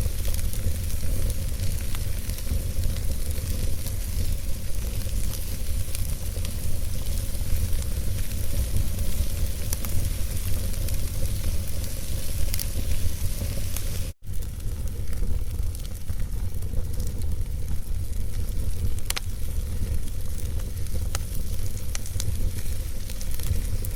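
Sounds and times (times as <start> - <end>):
fire rumbling and hissing: 0.0 - 23.9
logs crackling: 0.0 - 23.9.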